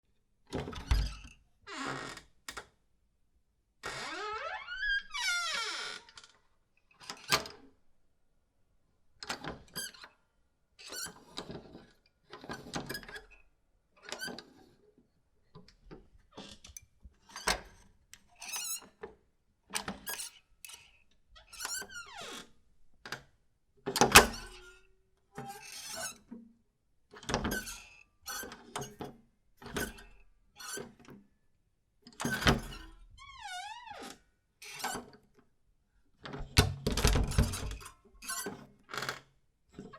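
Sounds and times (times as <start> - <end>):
wooden door hinges squeaking: 3.8 - 6.2.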